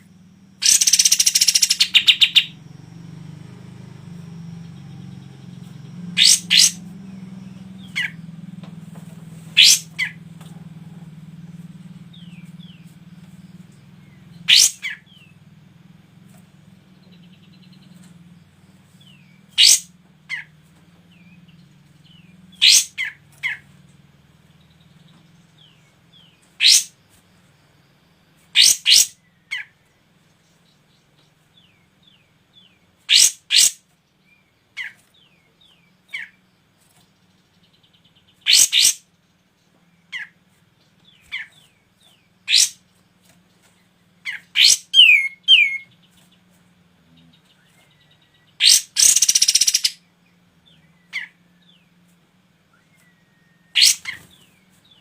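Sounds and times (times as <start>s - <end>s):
loud sharp bird chirps: 0.0s - 3.4s, 4.0s - 8.4s, 9.4s - 10.3s, 11.4s - 15.4s, 18.9s - 20.5s, 21.1s - 23.8s, 24.7s - 27.0s, 28.4s - 29.9s, 31.6s - 33.9s, 34.7s - 36.4s, 37.6s - 39.2s, 40.0s - 40.4s, 41.0s - 43.0s, 44.2s - 46.4s, 47.1s - 51.9s, 52.7s - 55.0s
low hum: 0.0s - 28.5s.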